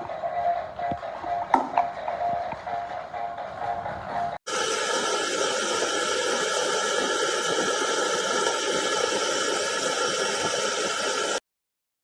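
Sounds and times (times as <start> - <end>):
electric kettle hissing: 4.5 - 11.4.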